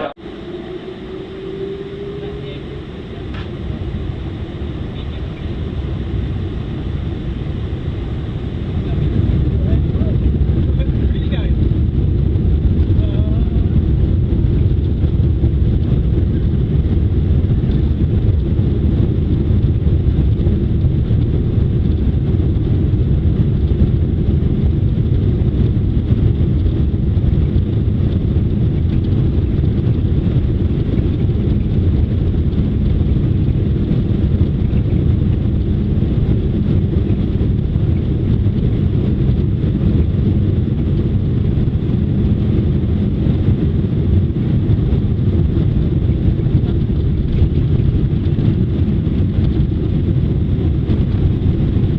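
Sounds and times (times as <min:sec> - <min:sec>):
underground train rumbling: 0:00.0 - 0:51.9.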